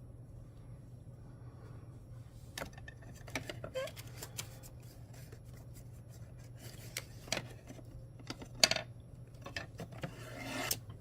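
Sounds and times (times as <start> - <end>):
faint low hum: 0.0 - 11.0
rustling scrape: 9.9 - 10.8.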